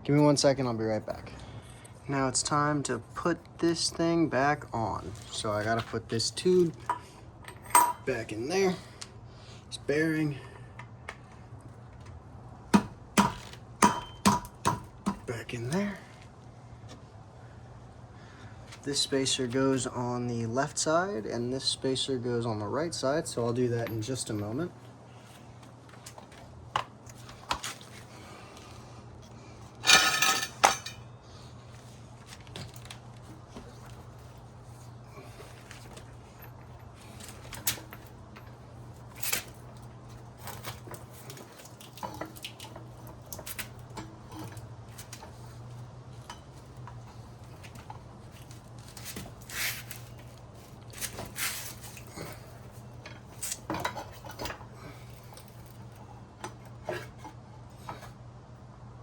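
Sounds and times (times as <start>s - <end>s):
steady low hum: 0.0s - 59.0s
metal tools clinking and clattering: 6.5s - 8.1s, 29.8s - 31.1s, 51.0s - 57.3s.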